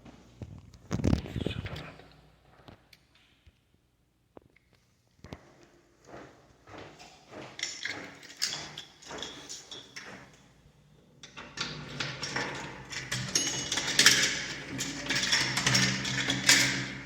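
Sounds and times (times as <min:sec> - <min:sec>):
clatter of knocks and clicks: 0:07.4 - 0:10.4, 0:11.2 - 0:17.0.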